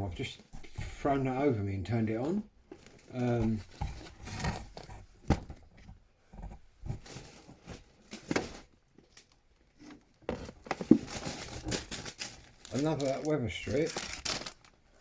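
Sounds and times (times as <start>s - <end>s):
box rustling: 6.9s - 14.8s.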